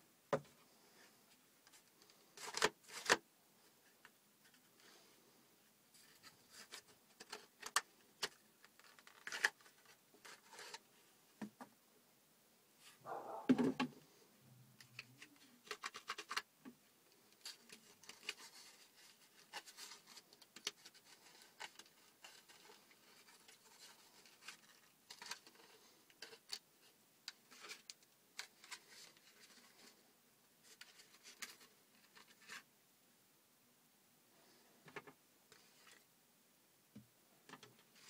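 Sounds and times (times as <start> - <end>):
cardboard parts clicking and scraping: 1.7 - 3.2, 6.0 - 10.8, 14.8 - 16.5, 17.3 - 30.0, 30.6 - 32.7.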